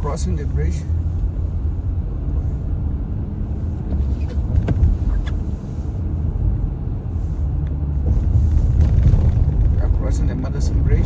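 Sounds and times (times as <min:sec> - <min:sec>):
car interior rumble: 0:00.0 - 0:11.0.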